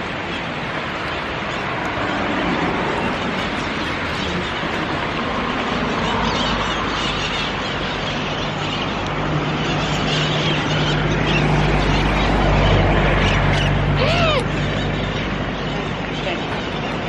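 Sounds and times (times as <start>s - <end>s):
road noise: 0.0s - 17.0s
vehicle engine hum: 0.0s - 17.0s.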